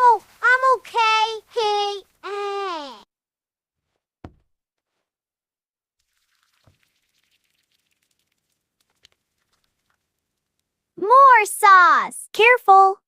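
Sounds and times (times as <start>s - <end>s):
soft tap: 4.2s - 4.5s.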